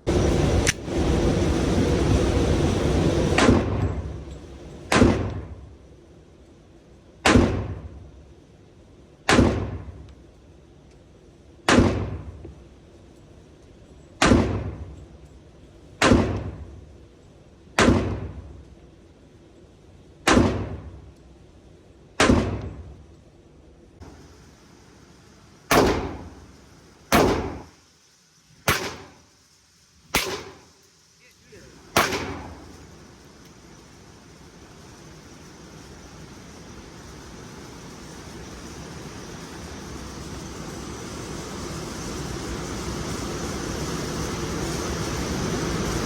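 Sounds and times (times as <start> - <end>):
pistol shots: 17.8 - 18.3, 20.3 - 20.8, 22.2 - 22.7, 25.7 - 26.3, 27.1 - 27.7, 28.7 - 29.2, 30.2 - 30.7, 31.9 - 32.7.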